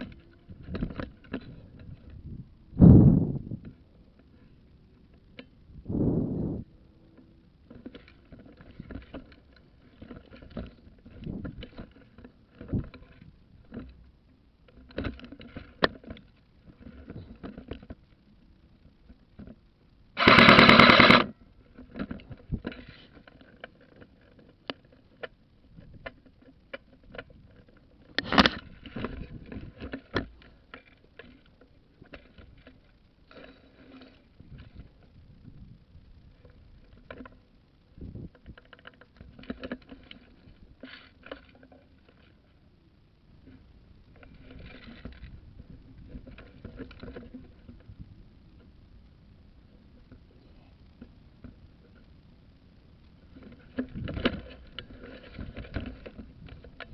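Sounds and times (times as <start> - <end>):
airsoft gun full-auto burst: 20.2 - 21.3.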